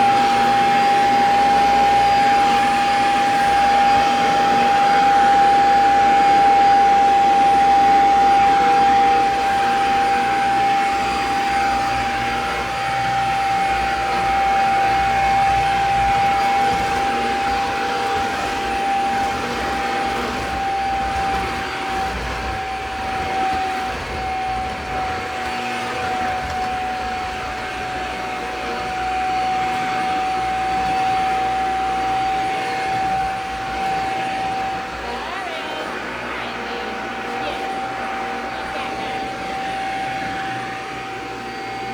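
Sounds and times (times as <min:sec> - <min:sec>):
vacuum cleaner running: 0:00.0 - 0:41.9.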